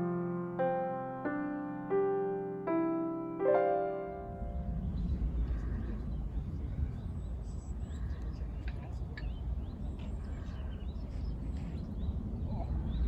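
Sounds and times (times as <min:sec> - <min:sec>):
steady low rumble: 0:02.7 - 0:13.0
small birds chirping: 0:04.4 - 0:13.0.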